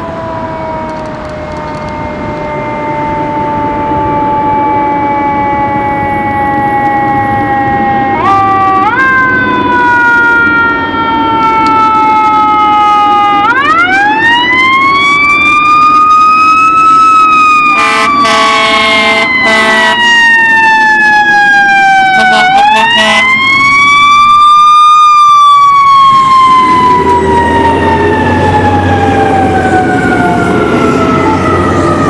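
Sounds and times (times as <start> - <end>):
fire truck siren: 0.0 - 32.0
air horn blast: 8.0 - 10.0, 17.7 - 20.2, 22.2 - 23.4.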